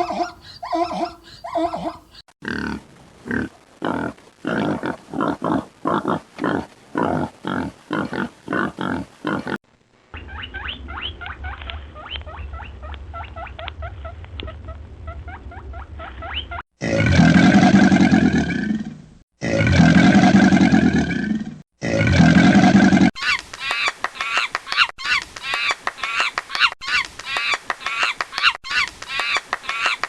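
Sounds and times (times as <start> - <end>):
high upward-sliding animal squeaks: 0.0 - 2.2, 10.2 - 16.6
loud drawn-out animal calls: 0.0 - 2.2, 10.2 - 16.6.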